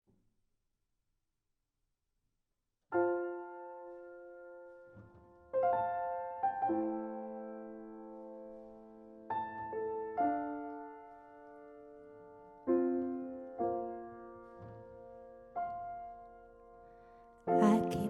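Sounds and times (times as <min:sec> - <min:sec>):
piano playing slow chords: 0:05.5 - 0:18.0.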